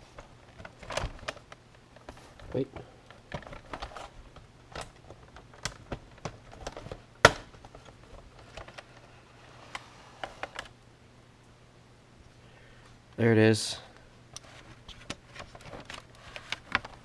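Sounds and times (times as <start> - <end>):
plastic case clicking and snapping: 4.7 - 7.7.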